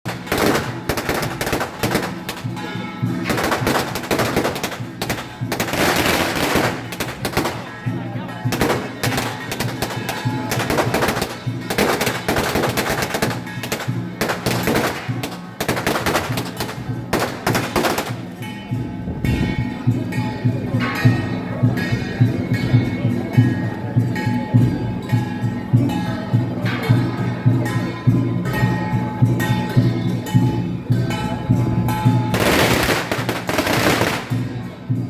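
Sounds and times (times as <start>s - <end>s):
firecrackers going off: 0.1s - 18.8s, 32.1s - 35.0s
music playing: 0.1s - 24.4s.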